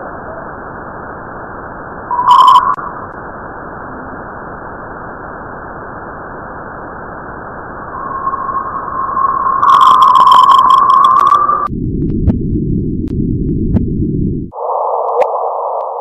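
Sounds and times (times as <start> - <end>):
electronic tones: 2.1 - 2.9, 7.9 - 11.7.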